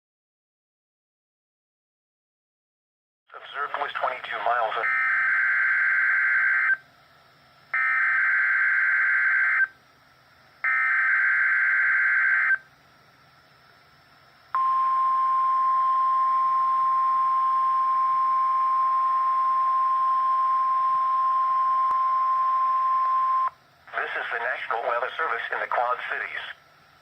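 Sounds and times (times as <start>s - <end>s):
radio hiss: 3.3s - 4.8s, 23.9s - 26.6s
steady high warning tone: 3.5s - 6.8s, 7.7s - 9.8s, 10.6s - 13.0s, 13.7s - 26.6s.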